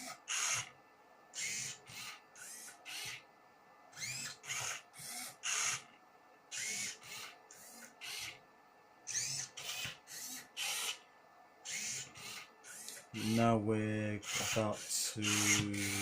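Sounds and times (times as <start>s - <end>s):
robot motors whirring: 0.0s - 0.7s, 1.4s - 3.2s, 4.0s - 5.9s, 6.5s - 8.4s, 9.1s - 11.0s, 11.7s - 13.6s, 14.2s - 16.0s.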